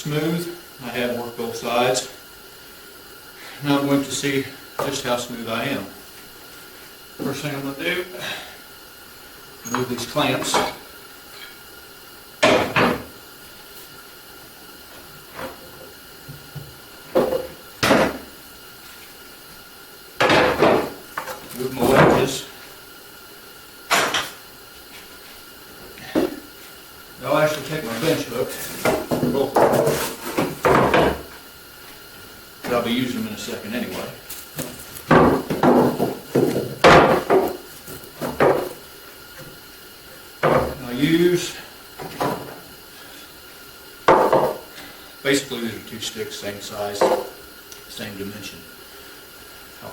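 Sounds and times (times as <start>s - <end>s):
wooden pieces knocking on workbench: 28.8s - 31.3s, 34.6s - 37.6s, 38.2s - 38.8s, 44.1s - 44.6s.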